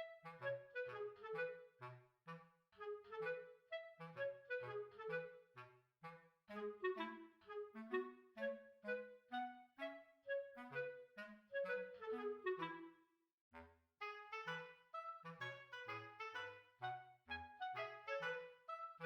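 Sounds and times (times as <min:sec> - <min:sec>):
bouncy instrumental music: 0:14.0 - 0:19.0.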